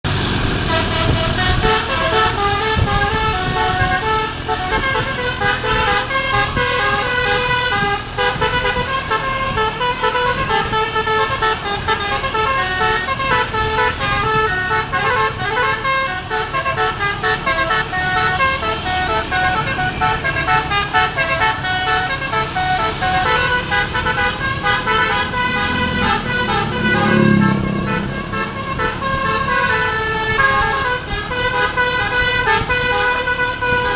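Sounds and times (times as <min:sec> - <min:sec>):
musical air horn tune: 0:00.6 - 0:33.9.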